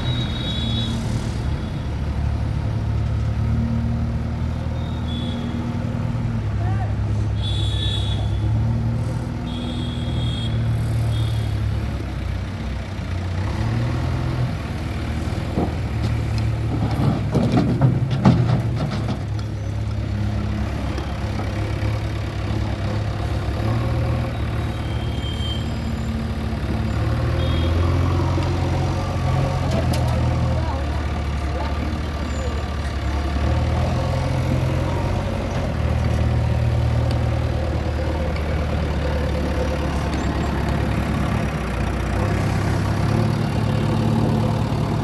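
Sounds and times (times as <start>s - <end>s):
backhoe diesel engine running: 0.0s - 45.0s
knocks and clatter: 15.4s - 19.6s.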